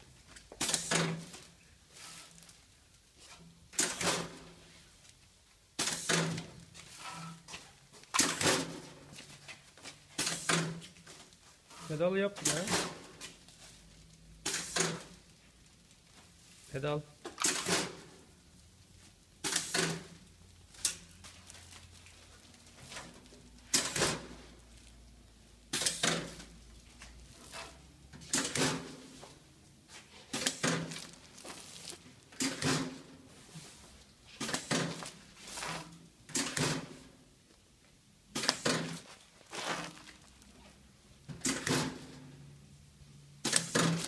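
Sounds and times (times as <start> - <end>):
bagging machine mechanical bursts: 19.4 - 20.2, 25.7 - 26.4, 43.4 - 44.0.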